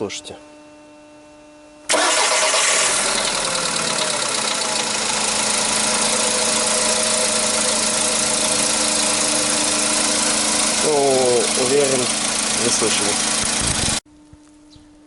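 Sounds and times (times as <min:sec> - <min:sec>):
car engine starting and idling: 0:01.9 - 0:14.0
engine knocking: 0:02.1 - 0:14.0.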